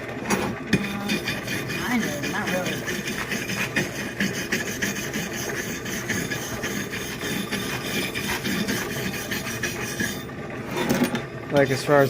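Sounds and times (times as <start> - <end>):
brush scrubbing rusty steel: 0.7 - 10.3.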